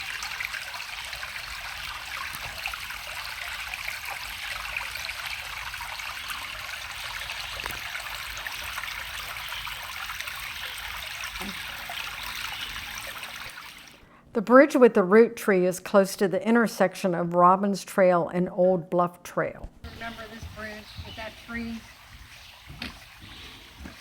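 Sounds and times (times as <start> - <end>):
creek trickling over rocks: 0.0 - 14.0, 19.9 - 24.0.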